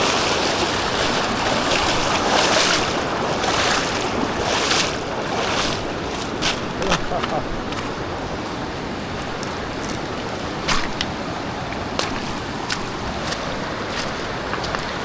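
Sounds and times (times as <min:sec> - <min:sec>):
river rushing: 0:00.0 - 0:15.0
sharp knocks: 0:10.6 - 0:11.1.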